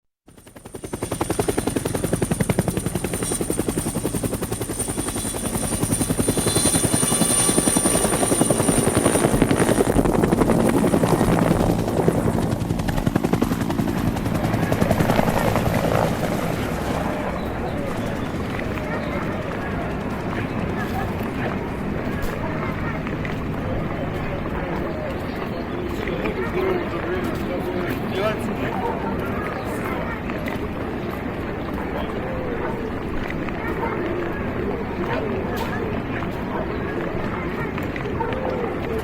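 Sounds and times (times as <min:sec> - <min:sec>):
drone rotors buzzing: 0:00.6 - 0:24.5.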